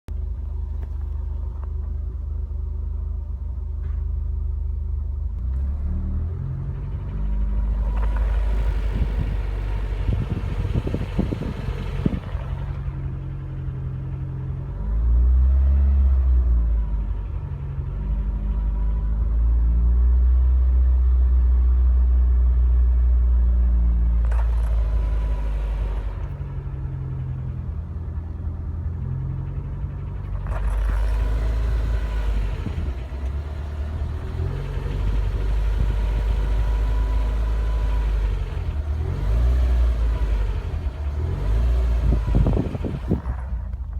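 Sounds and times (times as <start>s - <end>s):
car engine revving at low revs: 0.1s - 43.9s
engine ticking knock: 7.2s - 12.9s.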